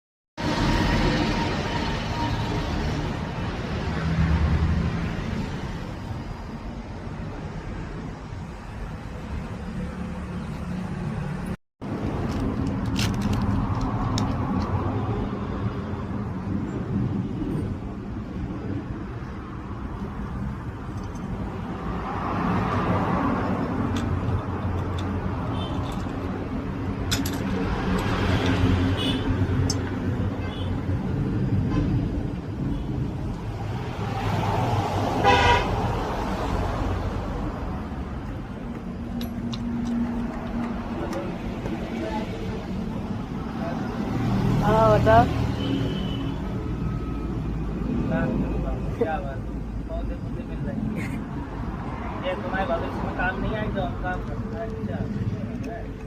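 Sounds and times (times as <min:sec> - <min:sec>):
vehicle horn honk: 0:35.2 - 0:35.8.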